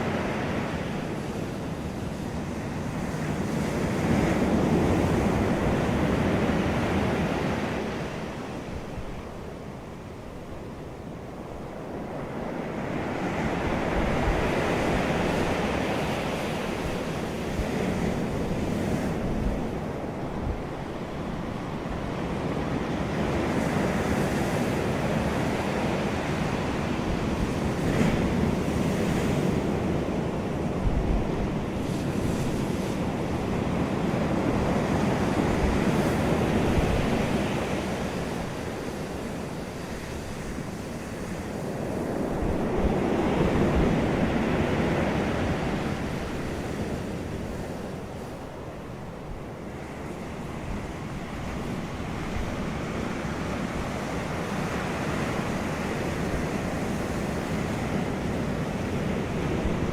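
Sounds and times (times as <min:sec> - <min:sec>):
waves breaking on shore: 0:00.0 - 0:59.9.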